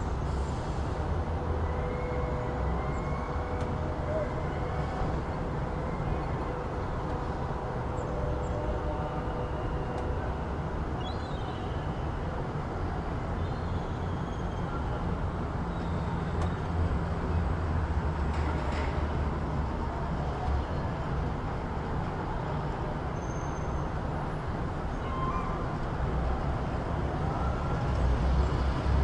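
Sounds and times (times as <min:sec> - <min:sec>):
rumble of passing vehicles: 0:00.0 - 0:29.0.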